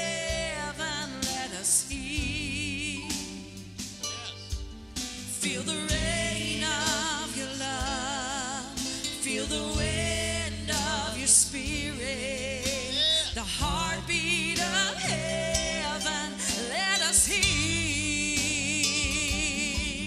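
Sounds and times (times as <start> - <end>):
voices singing with vibrato: 5.2 - 17.9.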